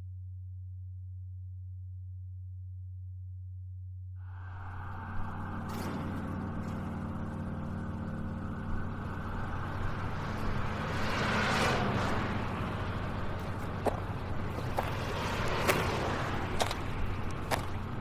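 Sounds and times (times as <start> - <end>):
rumbling hissing noise: 4.2 - 9.2
steady low hum: 4.2 - 18.0.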